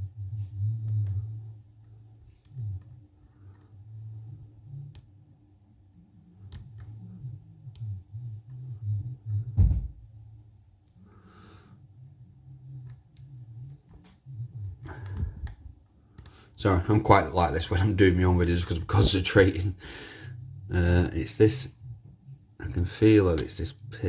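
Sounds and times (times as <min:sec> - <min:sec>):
loud knock: 0:09.6 - 0:10.0.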